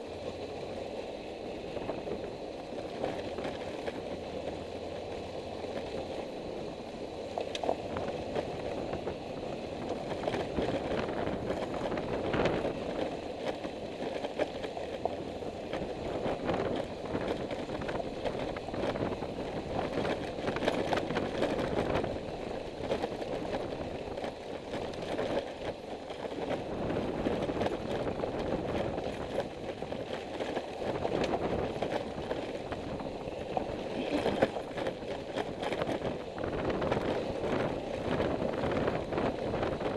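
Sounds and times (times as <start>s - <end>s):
vehicle engine and road noise: 0.0s - 39.9s.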